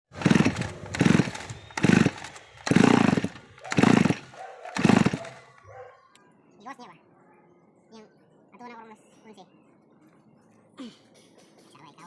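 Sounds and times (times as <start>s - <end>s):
brush cutter engine bursts: 0.1s - 5.6s.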